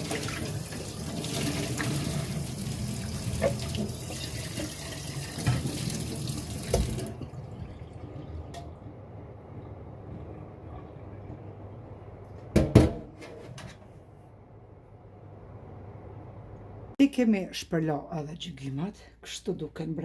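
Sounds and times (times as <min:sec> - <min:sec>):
tap water running: 0:00.0 - 0:08.9.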